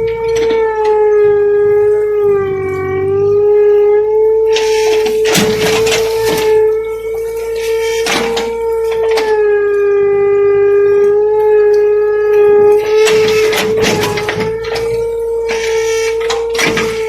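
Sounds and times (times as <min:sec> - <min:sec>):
metal knocks and clanks: 0:00.0 - 0:01.5, 0:04.6 - 0:09.6, 0:12.8 - 0:17.0
excavator engine whine: 0:00.0 - 0:17.0.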